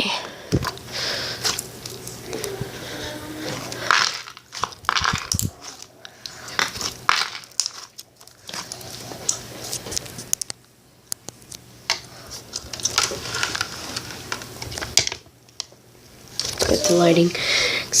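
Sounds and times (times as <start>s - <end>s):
small clicks and crackles from handling: 3.7s - 16.8s.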